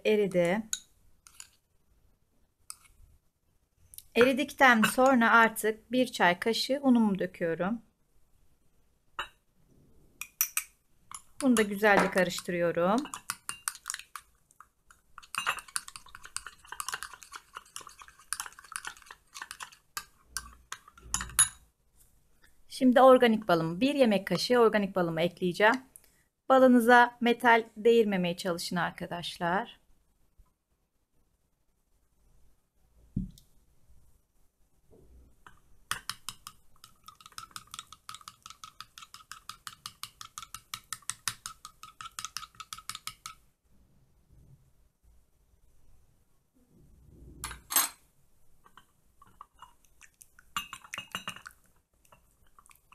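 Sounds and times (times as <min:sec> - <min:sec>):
spoon scraping glass bowl: 0:00.7 - 0:01.6, 0:04.2 - 0:05.2, 0:10.2 - 0:14.2, 0:15.2 - 0:21.6, 0:35.5 - 0:43.4, 0:47.4 - 0:48.0, 0:50.6 - 0:52.8.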